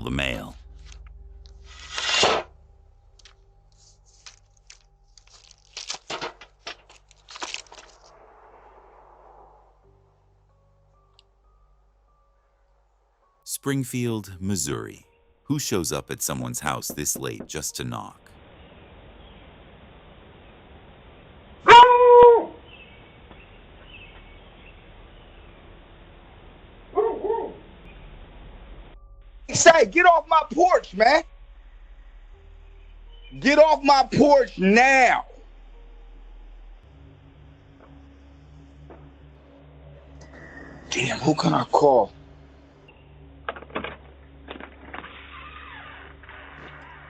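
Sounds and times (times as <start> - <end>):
mail rustling and crinkling: 3.2 - 8.2
dog barking: 21.6 - 22.6, 27.0 - 27.6.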